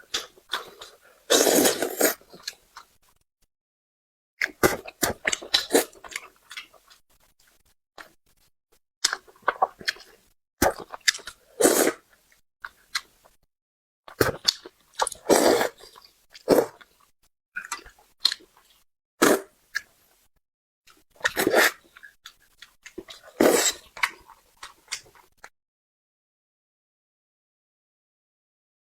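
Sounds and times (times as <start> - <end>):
wet chewing and smacking: 4.4 - 8.2, 9.0 - 11.4, 14.1 - 18.8, 20.9 - 25.5.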